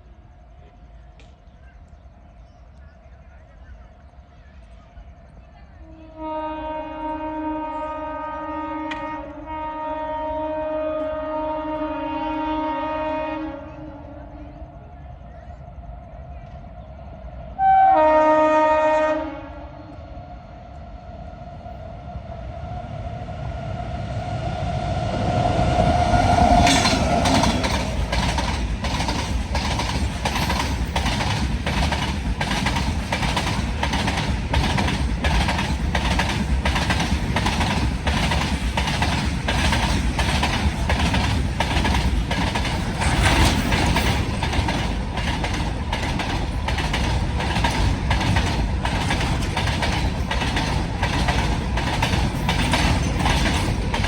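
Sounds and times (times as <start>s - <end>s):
locomotive horn blast: 5.8s - 14.6s, 17.6s - 20.2s
train wheels clickety-clack: 25.3s - 54.0s.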